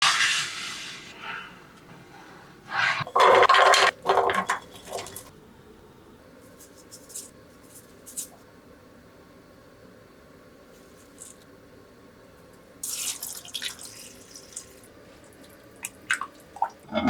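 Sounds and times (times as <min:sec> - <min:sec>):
cookware scraping and clattering: 0:02.7 - 0:05.3.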